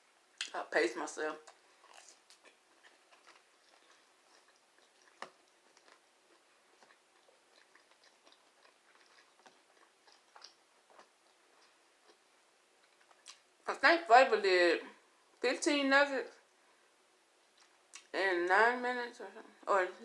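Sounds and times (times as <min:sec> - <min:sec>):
person chewing crunchy food: 0:01.4 - 0:13.5.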